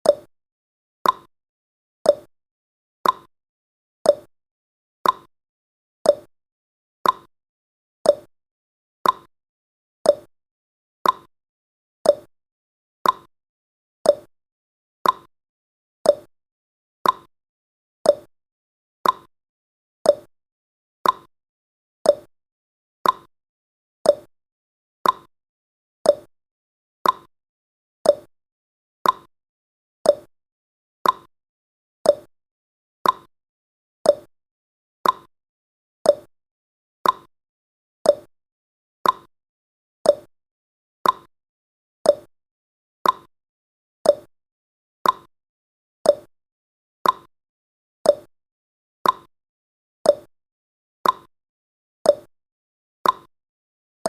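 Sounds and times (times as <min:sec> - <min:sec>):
timer ticking: 0:00.0 - 0:00.3, 0:01.0 - 0:01.3, 0:02.1 - 0:02.3, 0:03.0 - 0:03.3, 0:04.1 - 0:04.3, 0:05.0 - 0:05.3, 0:06.1 - 0:06.3, 0:07.0 - 0:07.3, 0:08.1 - 0:08.3, 0:09.0 - 0:09.3, 0:10.1 - 0:10.3, 0:11.0 - 0:11.3, 0:12.1 - 0:12.3, 0:13.0 - 0:13.3, 0:14.1 - 0:14.3, 0:15.0 - 0:15.3, 0:16.1 - 0:16.3, 0:17.0 - 0:17.3, 0:18.1 - 0:18.3, 0:19.0 - 0:19.3, 0:20.1 - 0:20.3, 0:21.0 - 0:21.3, 0:22.1 - 0:22.3, 0:23.0 - 0:23.3, 0:24.1 - 0:24.3, 0:25.0 - 0:25.3, 0:26.0 - 0:26.3, 0:27.0 - 0:27.3, 0:28.0 - 0:28.3, 0:29.0 - 0:29.3, 0:30.0 - 0:30.3, 0:31.0 - 0:31.3, 0:32.0 - 0:32.3, 0:33.0 - 0:33.3, 0:34.0 - 0:34.3, 0:35.0 - 0:35.3, 0:36.0 - 0:36.3, 0:37.0 - 0:37.3, 0:38.0 - 0:38.3, 0:39.0 - 0:39.3, 0:40.1 - 0:40.3, 0:41.0 - 0:41.3, 0:42.1 - 0:42.3, 0:43.0 - 0:43.3, 0:44.0 - 0:44.3, 0:45.0 - 0:45.3, 0:46.1 - 0:46.3, 0:47.0 - 0:47.3, 0:48.1 - 0:48.3, 0:49.0 - 0:49.3, 0:50.1 - 0:50.3, 0:51.0 - 0:51.3, 0:52.1 - 0:52.3, 0:53.0 - 0:53.3.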